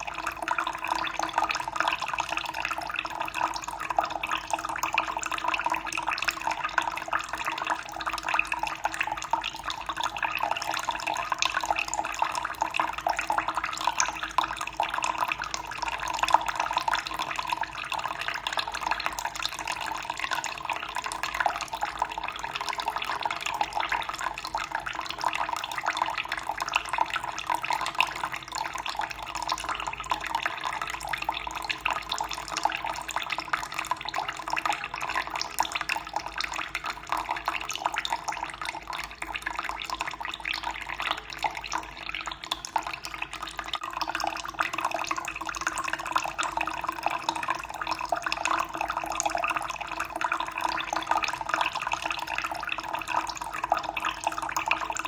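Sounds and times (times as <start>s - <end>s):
faint steady hum: 0.0s - 55.0s.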